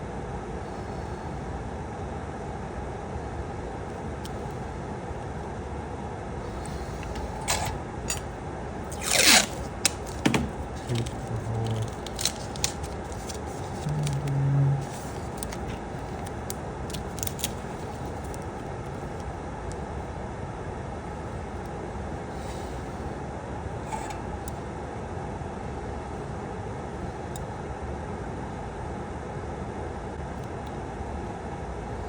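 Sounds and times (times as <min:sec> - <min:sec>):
fume hood fan whooshing: 0:03.1 - 0:19.3, 0:20.9 - 0:27.7.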